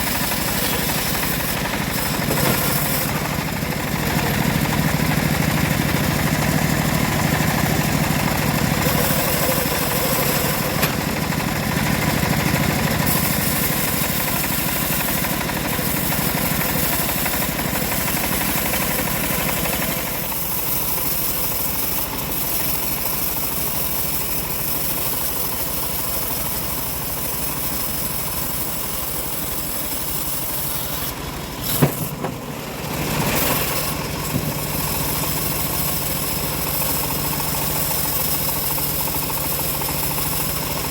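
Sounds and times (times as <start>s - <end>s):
bandsaw mill sawing log: 0.0s - 40.9s.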